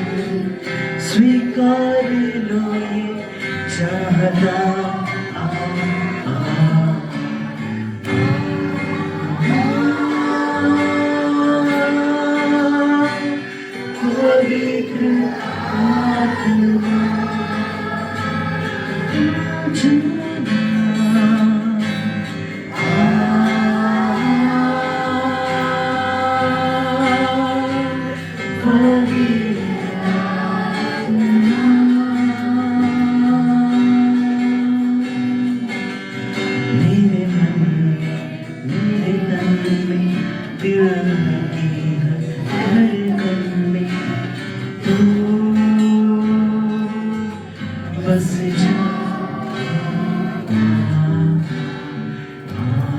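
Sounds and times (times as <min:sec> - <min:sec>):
acoustic guitar strumming: 0:00.0 - 0:52.9
person singing held melody: 0:03.8 - 0:20.4.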